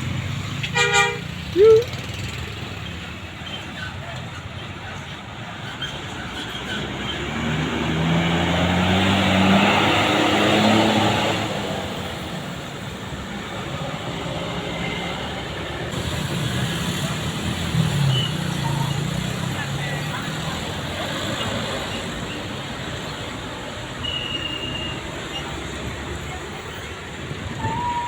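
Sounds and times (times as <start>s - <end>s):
steady traffic noise: 0.0s - 28.0s
bus driving past: 5.3s - 28.0s.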